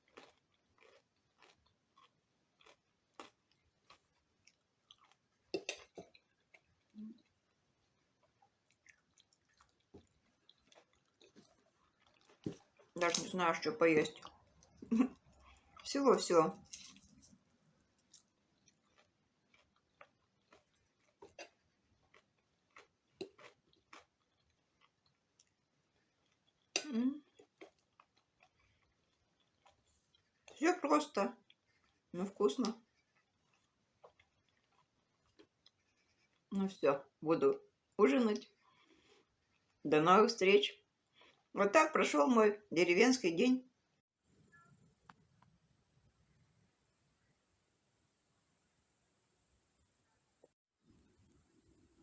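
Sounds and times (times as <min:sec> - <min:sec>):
person chewing: 0:00.0 - 0:13.2, 0:14.0 - 0:15.9, 0:16.6 - 0:30.6, 0:31.4 - 0:36.6, 0:38.4 - 0:39.8, 0:40.9 - 0:41.5.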